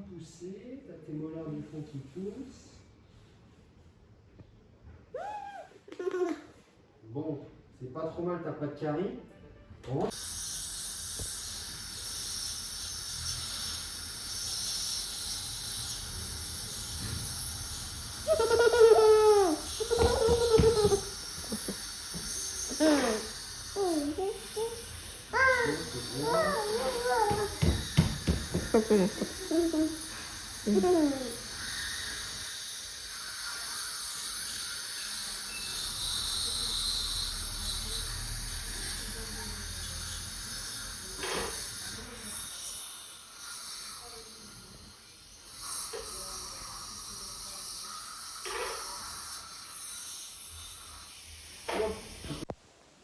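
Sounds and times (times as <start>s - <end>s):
child's falling drawn-out voice: 25.3s - 27.6s.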